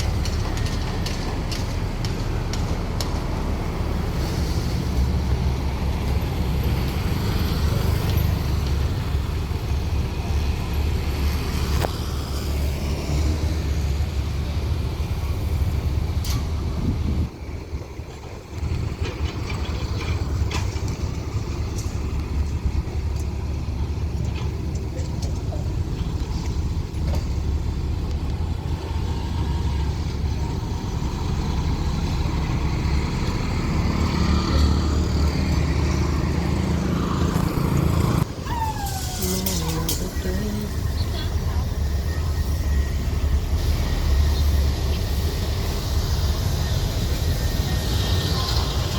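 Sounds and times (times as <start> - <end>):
heavy machinery diesel engines: 0.0 - 48.9.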